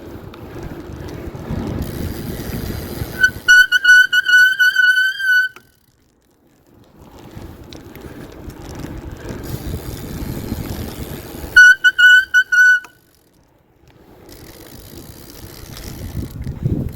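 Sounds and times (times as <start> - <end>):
bike tyre and wind noise: 0.0 - 16.9
brake pads squealing: 0.1 - 5.8, 7.0 - 13.2.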